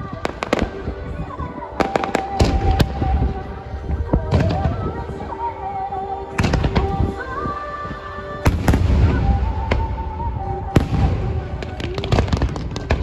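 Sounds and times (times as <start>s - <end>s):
low rumbling: 8.4s - 13.0s
fireworks bangs: 8.5s - 13.0s.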